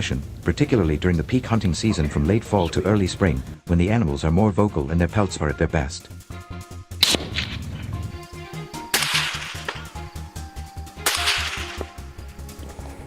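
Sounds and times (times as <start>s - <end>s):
background music with steady beat: 0.0s - 13.0s
sharp whip cracks: 7.0s - 7.9s, 8.9s - 10.0s, 11.0s - 12.0s.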